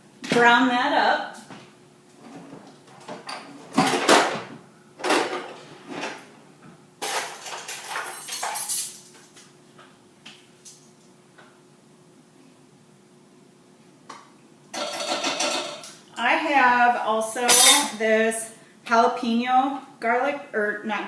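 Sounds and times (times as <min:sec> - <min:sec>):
cookware scraping and rattling: 0:07.0 - 0:09.0, 0:14.8 - 0:16.0, 0:17.4 - 0:17.9
cookware knocking and clinking: 0:14.8 - 0:15.9.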